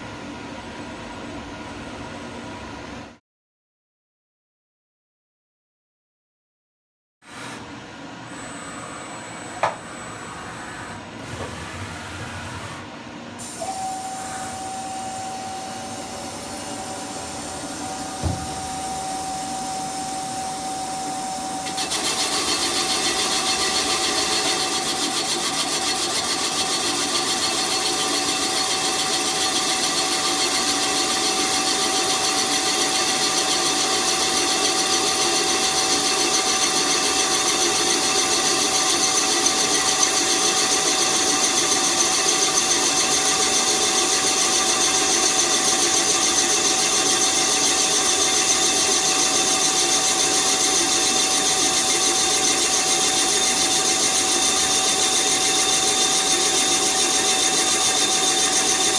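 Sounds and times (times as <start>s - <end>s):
metal-cutting machine boring: 13.4s - 58.9s.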